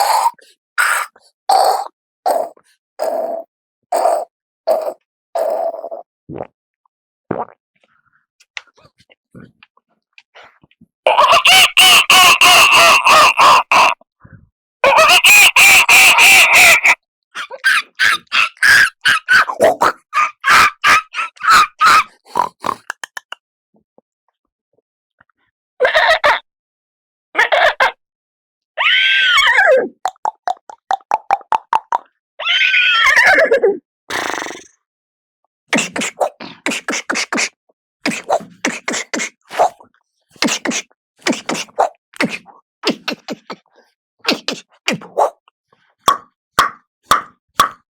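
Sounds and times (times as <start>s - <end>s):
person imitating chicken clucks: 11.1s - 14.0s, 14.8s - 23.4s, 35.7s - 39.8s, 40.4s - 43.7s, 44.3s - 45.4s
percussive mouth pops and smacks: 22.6s - 23.4s, 30.1s - 32.1s, 35.7s - 37.5s, 38.1s - 39.8s, 40.4s - 43.7s, 44.3s - 45.4s, 46.0s - 47.8s.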